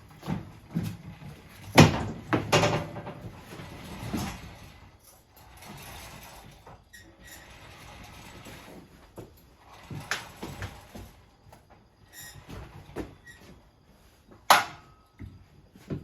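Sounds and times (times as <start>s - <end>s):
knocks and clunks of handling: 0.2s - 4.5s.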